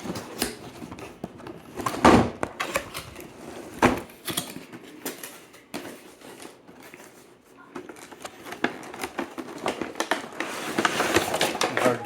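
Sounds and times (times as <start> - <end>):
cardboard clicks and rustles: 0.0 - 12.0
cardboard thump: 1.9 - 2.6, 3.8 - 4.1.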